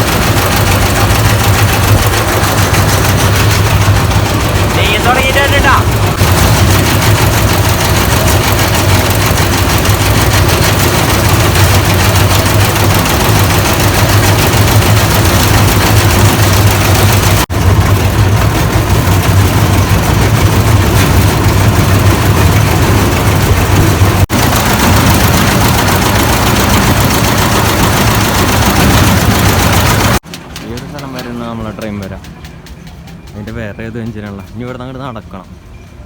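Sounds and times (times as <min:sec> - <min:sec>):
toy train engine running: 0:00.0 - 0:23.6.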